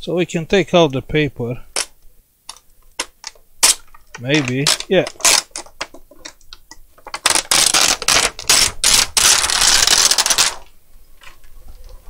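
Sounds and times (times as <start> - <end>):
plastic sheet crinkling and rustling: 3.6 - 6.4, 7.0 - 11.4.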